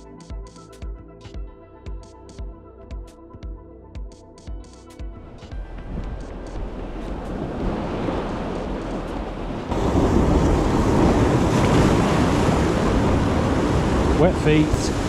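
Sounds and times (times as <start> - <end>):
wind buffeting microphone: 5.2 - 15.0
sea swell washing against rocks: 5.9 - 15.0.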